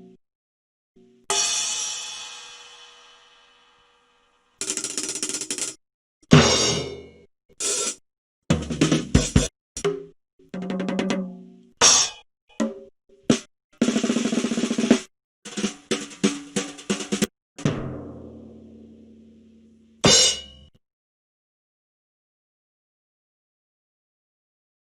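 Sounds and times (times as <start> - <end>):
cymbal crashes: 1.3 - 4.0
snare and tom fills: 7.6 - 10.0, 13.3 - 18.4.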